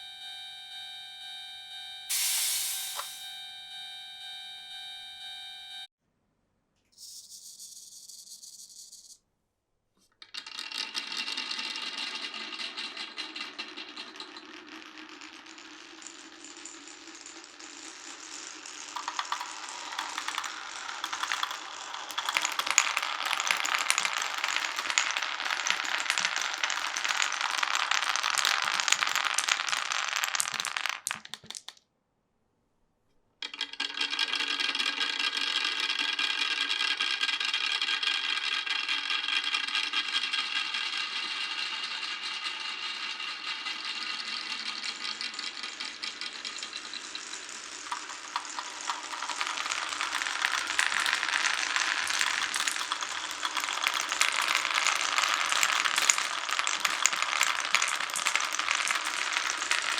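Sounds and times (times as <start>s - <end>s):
marbles rattling down wooden run: 2.1s - 3.2s, 10.2s - 31.8s, 33.4s - 59.9s
short hiss: 2.1s - 3.4s.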